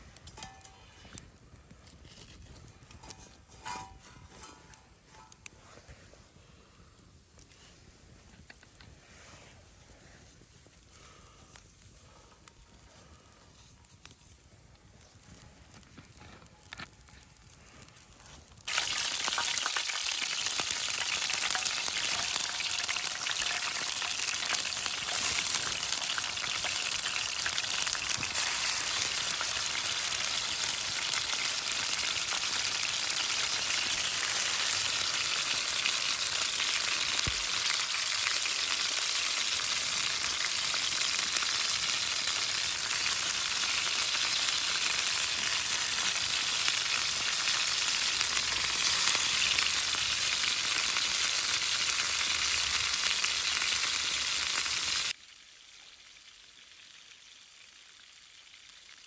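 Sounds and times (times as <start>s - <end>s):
food frying with sizzle: 18.2s - 59.0s.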